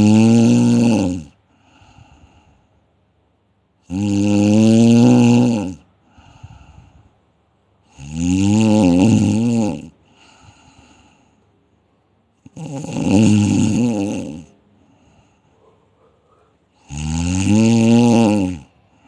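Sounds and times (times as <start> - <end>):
loud snoring: 0.0 - 1.4, 3.8 - 6.9, 7.8 - 11.0, 12.4 - 14.6, 16.8 - 18.8.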